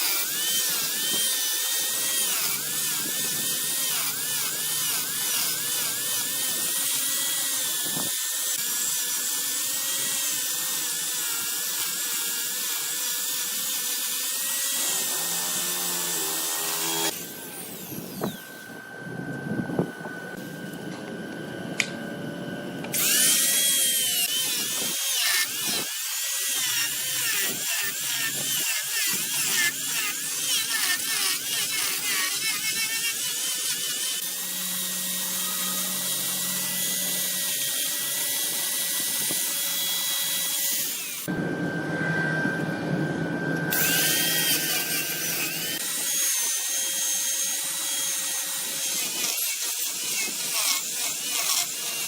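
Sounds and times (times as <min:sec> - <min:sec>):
thin whine of lathe: 0:11.5 - 0:51.8.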